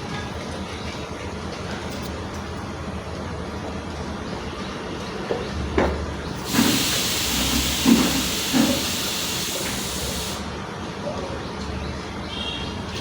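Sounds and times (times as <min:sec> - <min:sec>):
loud steady hiss: 0:06.4 - 0:10.6.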